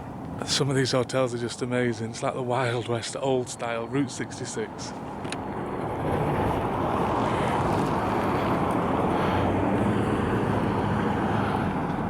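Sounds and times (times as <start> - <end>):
motor vehicle running: 4.7 - 12.0.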